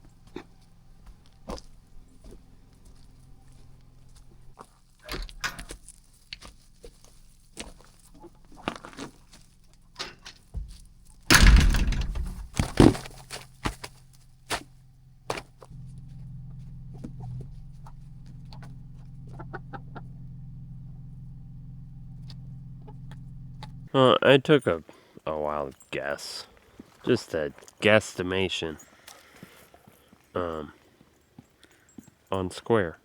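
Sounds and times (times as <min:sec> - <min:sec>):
low hum: 0:09.4 - 0:23.9
knocks and clatters: 0:09.8 - 0:14.7
fowl clucking: 0:17.2 - 0:20.2.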